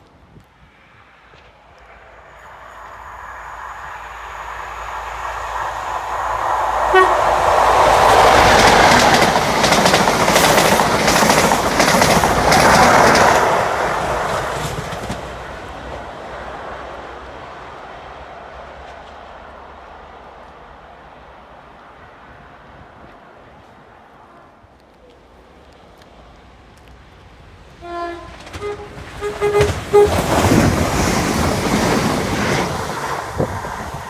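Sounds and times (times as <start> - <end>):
train wheels clattering: 1.2 - 16.1, 28.1 - 34.0
train horn: 1.6 - 9.4, 27.8 - 32.7.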